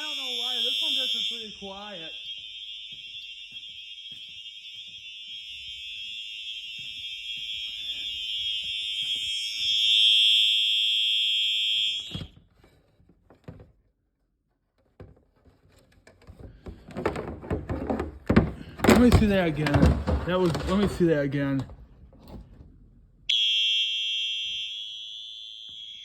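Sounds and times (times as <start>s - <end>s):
electronic horn tone: 0.0s - 12.3s, 23.3s - 26.0s
handling noises: 14.8s - 22.6s.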